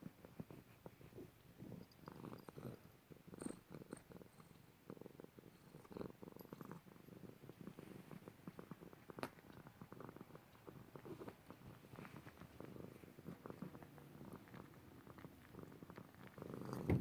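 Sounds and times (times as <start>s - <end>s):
cat purring and snoring: 0.0s - 17.0s.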